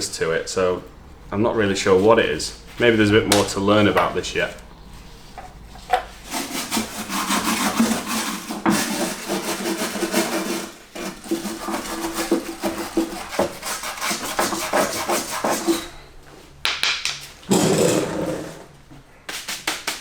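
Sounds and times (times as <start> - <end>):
hand scrubbing car bodywork: 0.0 - 16.0.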